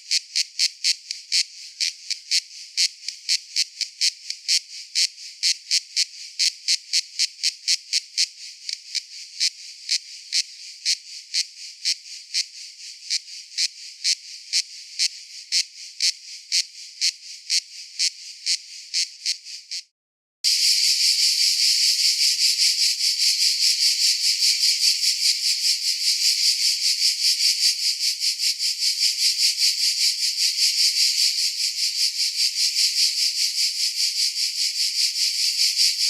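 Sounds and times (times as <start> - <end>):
cicadas buzzing: 20.5 - 36.0.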